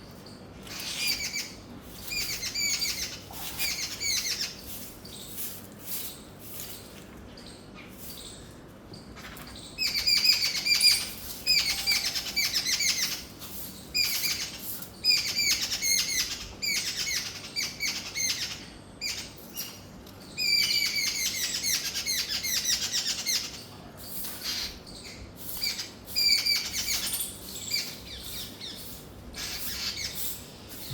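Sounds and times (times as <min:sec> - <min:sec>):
bird harsh chattering calls: 0:00.7 - 0:06.3, 0:20.4 - 0:30.9.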